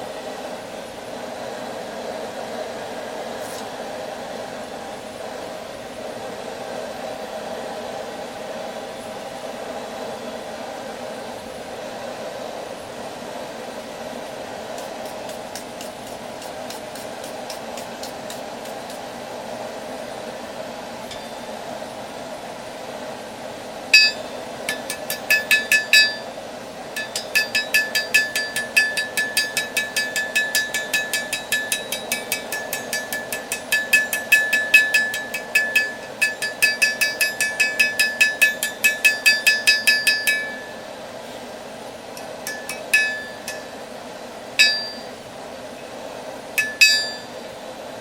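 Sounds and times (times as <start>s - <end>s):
gas forge burner rushing: 14.2s - 21.5s, 23.8s - 43.9s
hammer striking metal on anvil: 21.0s - 21.6s, 24.0s - 26.4s, 27.0s - 40.9s, 42.2s - 43.9s, 44.6s - 45.2s, 46.6s - 47.4s.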